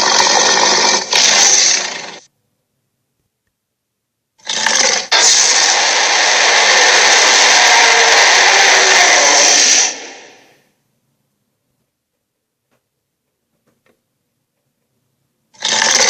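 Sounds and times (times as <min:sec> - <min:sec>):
loud monster sound effect: 0:00.0 - 0:02.2, 0:04.4 - 0:10.6.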